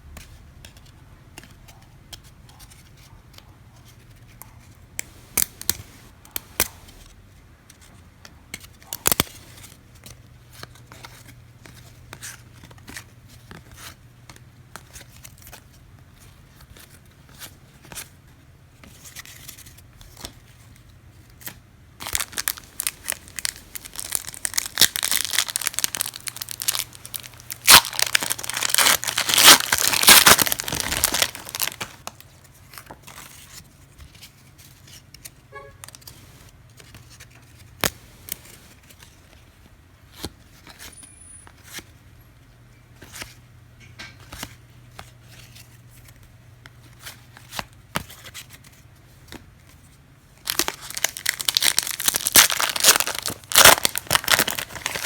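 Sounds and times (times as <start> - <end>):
cards clicking and tapping: 5.0 - 7.0
wrapper tearing and crinkling: 22.0 - 32.2, 50.5 - 55.0.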